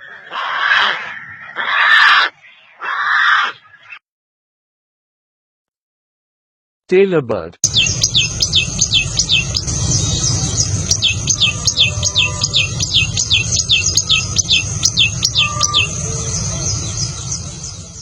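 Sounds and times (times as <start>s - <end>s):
bird calling high notes: 7.6s - 18.0s.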